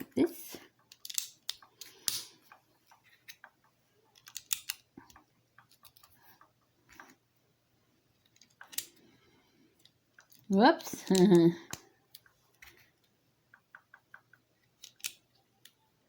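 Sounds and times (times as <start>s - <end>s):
plastic bricks clicking together: 0.7s - 7.2s, 8.2s - 9.0s, 9.8s - 12.4s, 13.0s - 15.8s.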